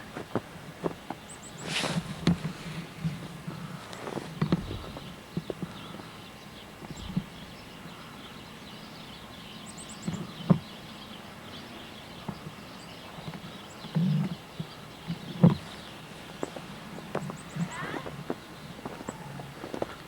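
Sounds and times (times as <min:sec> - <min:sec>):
steady outdoor hiss: 0:00.0 - 0:20.0
footsteps crunching in snow: 0:00.1 - 0:05.6, 0:15.0 - 0:20.0.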